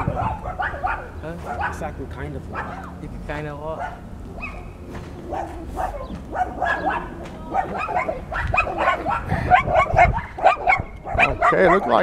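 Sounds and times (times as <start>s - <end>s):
dogs barking: 0.0s - 12.0s.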